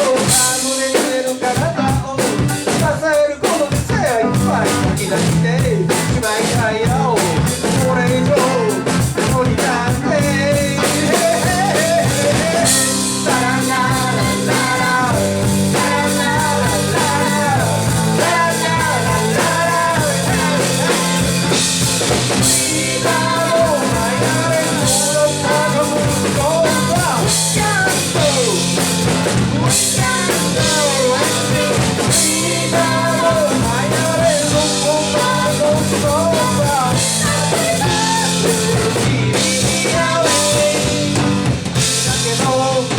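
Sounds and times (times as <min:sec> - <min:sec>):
drum kit with cymbal crashes: 0:00.0 - 0:42.9
guitar: 0:00.0 - 0:42.9
keyboards: 0:00.0 - 0:42.9
wavering lead melody: 0:10.6 - 0:39.7.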